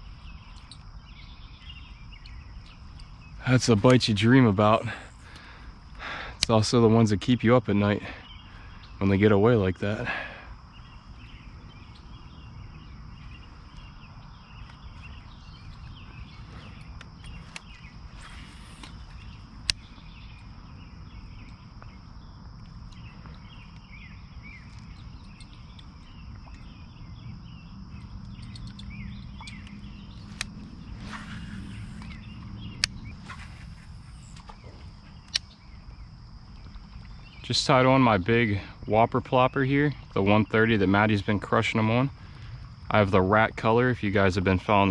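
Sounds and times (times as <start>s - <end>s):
insect drone: 0.0s - 44.9s
insects chirping: 0.0s - 44.9s
sharp clicks: 28.0s - 35.7s.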